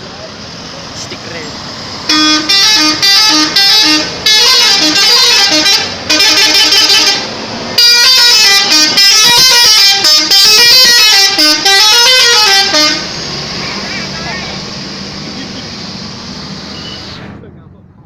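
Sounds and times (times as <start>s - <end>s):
multi-tone bus horns jingle: 2.0s - 14.7s.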